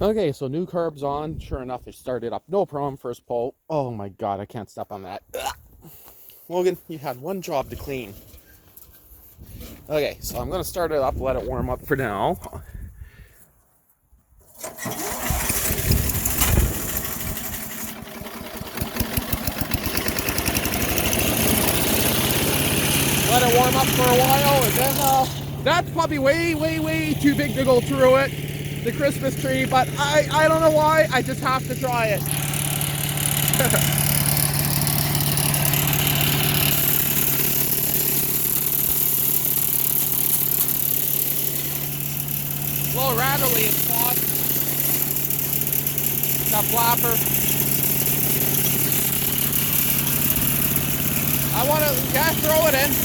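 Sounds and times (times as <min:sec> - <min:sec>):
small engine running: 0:14.4 - 0:53.0.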